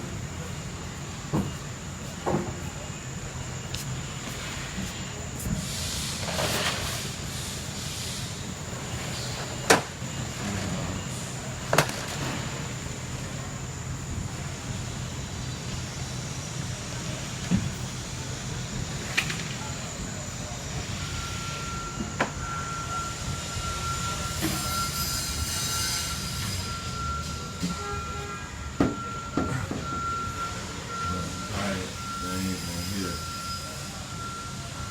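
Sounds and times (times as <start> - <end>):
locomotive low rumble: 0.0 - 34.9
high-pitched squeal: 19.8 - 34.9.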